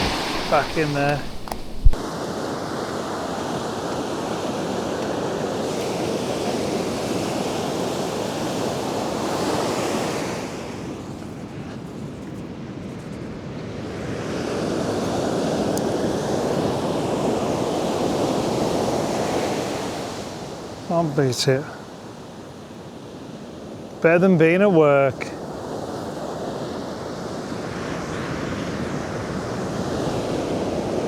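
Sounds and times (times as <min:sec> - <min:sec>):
wind noise on microphone: 0:00.0 - 0:02.4
ocean surf washing ashore: 0:00.0 - 0:12.8, 0:13.4 - 0:31.0.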